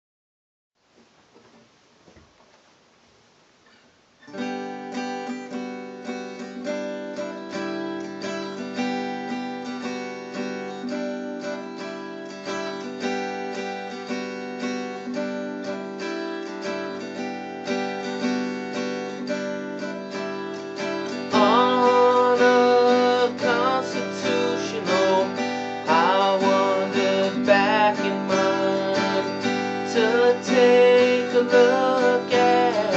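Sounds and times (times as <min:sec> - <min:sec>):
acoustic guitar accompaniment: 0:03.6 - 0:32.9
louder melody: 0:07.1 - 0:32.9.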